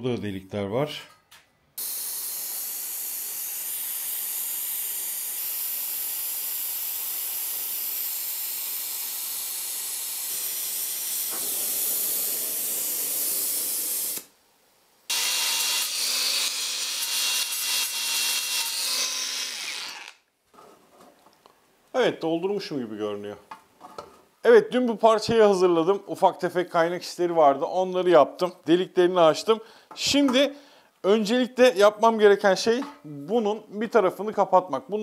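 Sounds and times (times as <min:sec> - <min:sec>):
welding hiss: 0:01.8 - 0:14.4.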